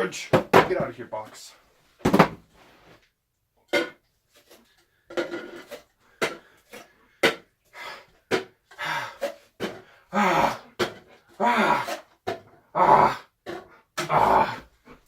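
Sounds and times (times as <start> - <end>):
cups knocking and clattering: 3.7 - 7.5, 8.1 - 9.9, 10.7 - 12.6.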